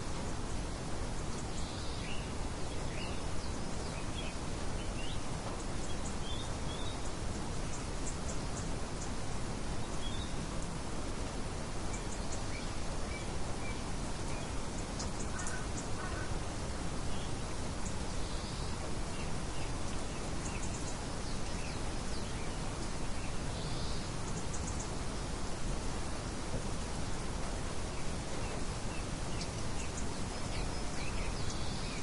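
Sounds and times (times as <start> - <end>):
faint bird chirps: 11.8 - 25.0.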